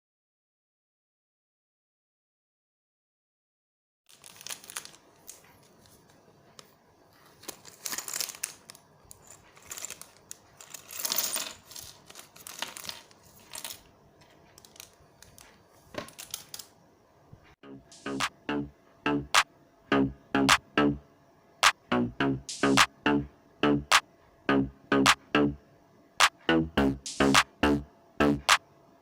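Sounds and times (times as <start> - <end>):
plastic bag rustling: 4.1 - 6.0, 7.2 - 13.8.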